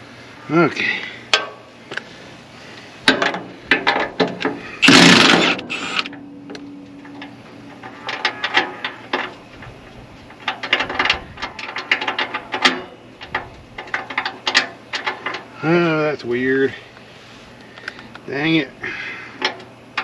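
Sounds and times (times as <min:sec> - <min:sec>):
loud noisy burst: 0:04.8 - 0:06.1
ratchet wrench clicking: 0:04.8 - 0:06.1.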